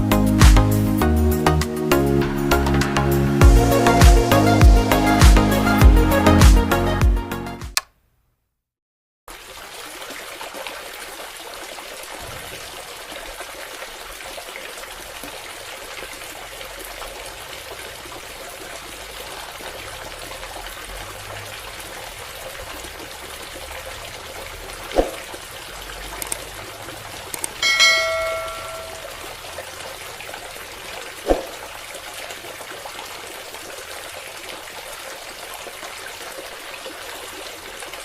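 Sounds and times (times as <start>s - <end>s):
water pouring in a stream: 9.3s - 38.0s.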